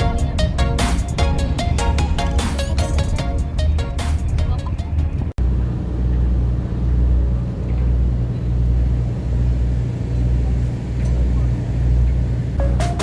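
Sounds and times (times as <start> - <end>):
music: 0.0 - 5.4, 12.6 - 13.0
vehicle engine rumble: 0.0 - 13.0.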